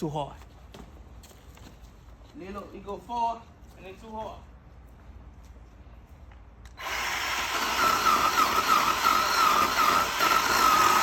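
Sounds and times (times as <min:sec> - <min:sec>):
chainsaw engine at high speed: 0:06.8 - 0:11.0.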